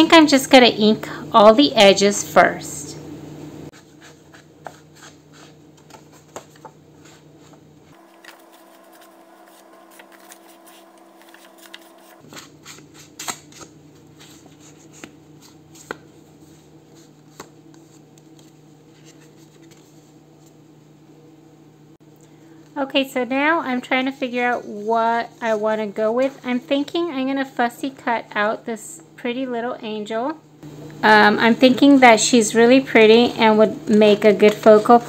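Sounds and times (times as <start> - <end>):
low room hum: 0.0 - 35.0
paper tapping and rustling: 5.8 - 16.1.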